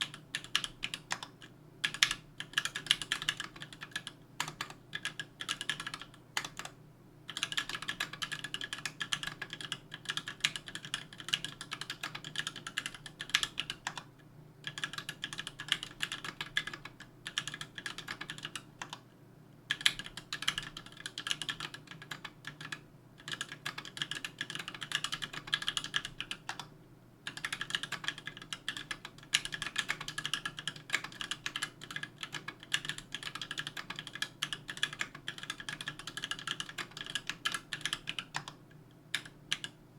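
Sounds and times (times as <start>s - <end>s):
mechanical keyboard typing: 0.0s - 19.0s, 19.7s - 26.7s, 27.3s - 39.8s.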